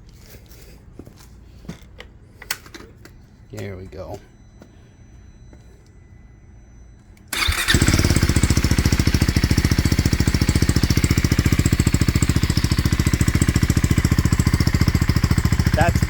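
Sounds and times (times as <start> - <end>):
motorcycle engine idling: 7.3 - 16.0
motorcycle starter cranking: 7.3 - 16.0.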